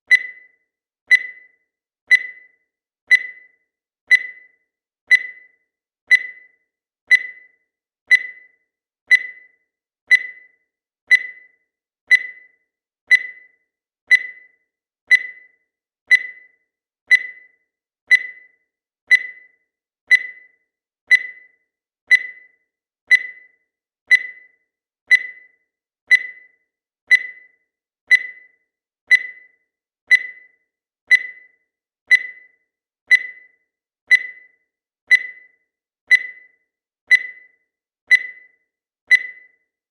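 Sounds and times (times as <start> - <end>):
digital timer beeping: 0.0 - 39.9.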